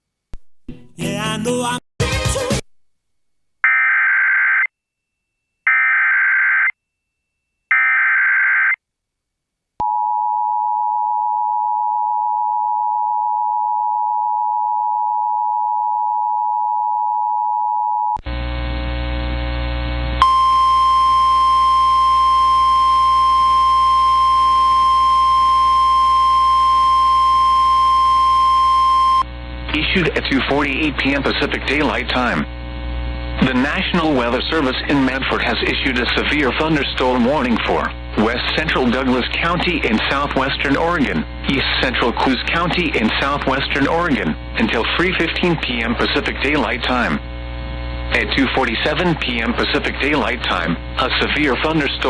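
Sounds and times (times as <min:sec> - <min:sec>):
hiss and hum: 0:29.2 - 0:52.0.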